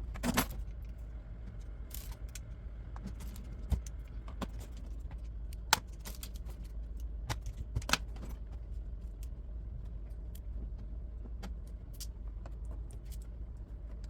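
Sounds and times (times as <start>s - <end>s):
steady low hum: 0.0s - 14.0s
plastic parts clicking and tapping: 1.9s - 9.3s.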